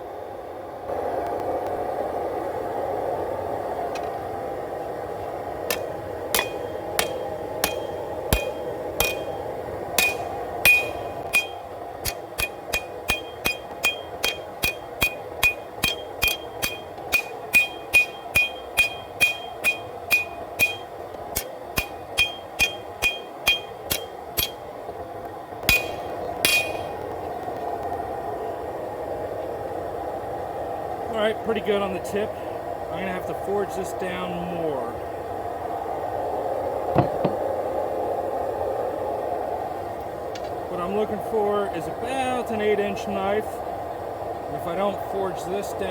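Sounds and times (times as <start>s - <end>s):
steady background hiss: 0.0s - 45.9s
hammer striking steel on anvil: 5.7s - 24.6s, 25.6s - 27.0s, 37.0s - 37.4s.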